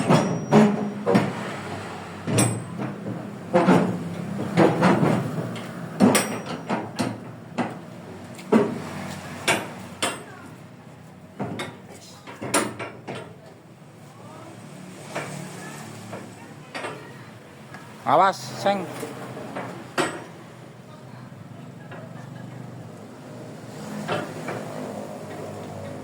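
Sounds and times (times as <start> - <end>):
knocks and bangs with ringing: 0.0 - 1.4, 2.2 - 7.8.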